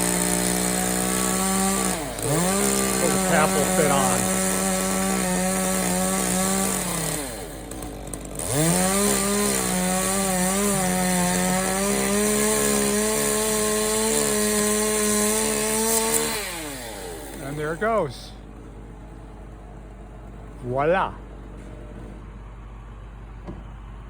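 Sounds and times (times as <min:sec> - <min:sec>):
chainsaw cutting wood: 0:00.0 - 0:18.1.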